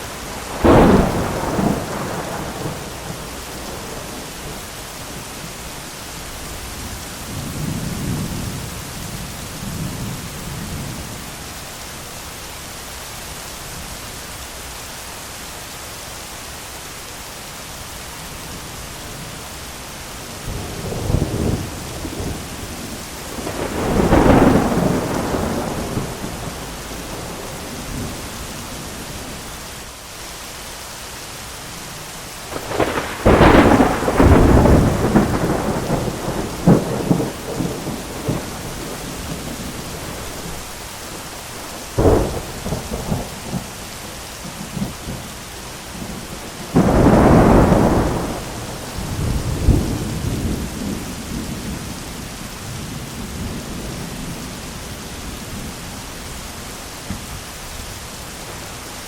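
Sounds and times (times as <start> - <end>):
steady rain: 0.0 - 59.0
thunder: 0.4 - 4.1, 20.5 - 28.3, 32.5 - 40.6, 42.0 - 43.8, 45.9 - 52.1.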